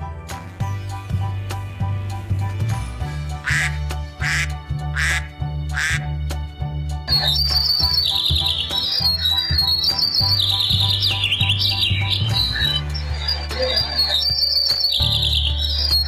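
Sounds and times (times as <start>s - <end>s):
music with low beat: 0.0s - 16.0s
duck quacking: 3.4s - 6.1s, 7.1s - 9.8s
songbird chirping: 7.1s - 16.0s.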